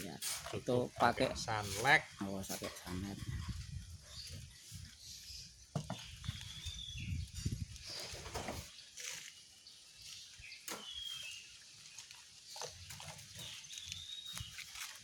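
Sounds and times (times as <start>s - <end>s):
faint high bird chirps: 4.1s - 9.4s, 10.0s - 11.6s
water splashing and scrubbing: 7.8s - 15.0s.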